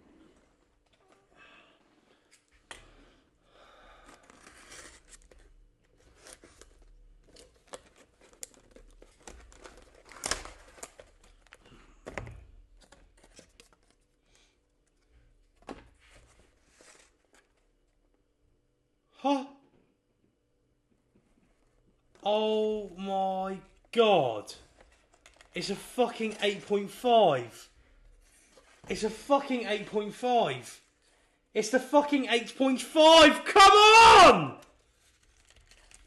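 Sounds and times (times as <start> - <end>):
packaging rustling and crinkling: 4.0 - 11.7, 34.8 - 36.0.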